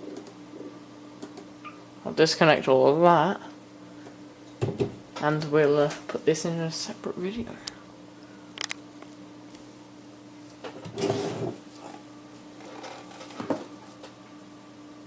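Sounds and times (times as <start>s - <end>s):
faint steady hum: 0.0s - 15.0s
cables scraping and rustling: 12.6s - 14.1s.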